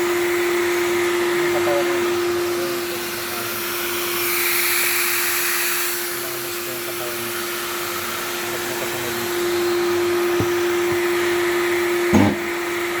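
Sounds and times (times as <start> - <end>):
power sander running: 7.4 - 13.0
thump: 12.1 - 12.5.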